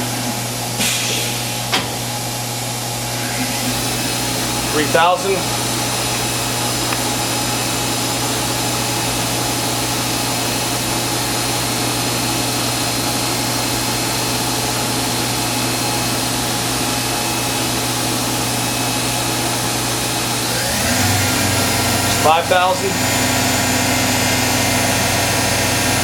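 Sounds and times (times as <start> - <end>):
machine spindle motor whine: 2.9 - 7.3, 20.3 - 26.0
low hum: 3.0 - 6.2.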